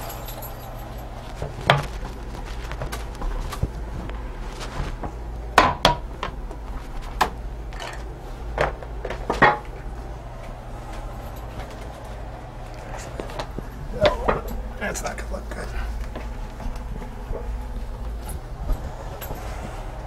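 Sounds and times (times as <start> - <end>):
low steady hum: 0.0 - 20.0
hard objects clicking and knocking: 5.0 - 6.4, 7.2 - 9.8.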